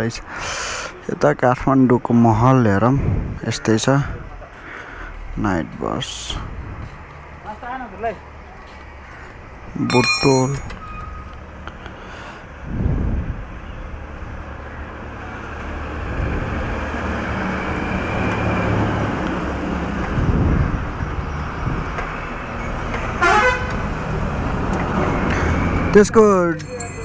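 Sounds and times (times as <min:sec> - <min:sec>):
road traffic passing: 0:00.0 - 0:27.0
vehicle horn toot: 0:23.2 - 0:23.7.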